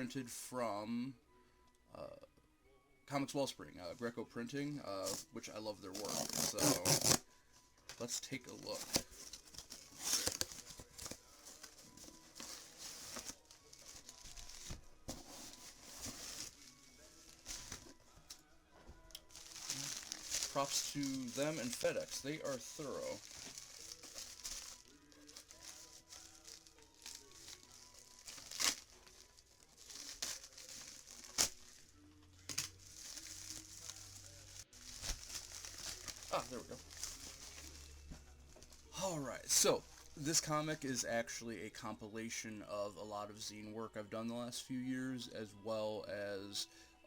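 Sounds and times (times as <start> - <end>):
packing material crinkling: 5.9 - 7.2, 8.0 - 18.4, 19.0 - 40.5
packing tape tearing: 6.0 - 7.2, 8.7 - 18.4, 19.1 - 37.9.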